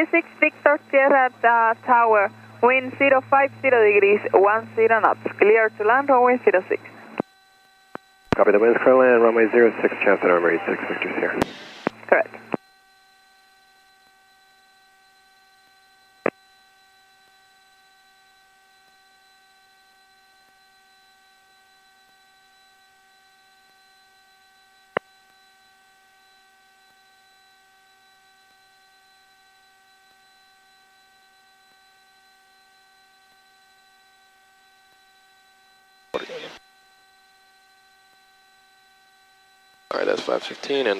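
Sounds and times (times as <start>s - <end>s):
electrical hum on intercom: 0.0s - 7.3s, 8.3s - 12.6s, 36.2s - 36.9s, 39.9s - 40.9s.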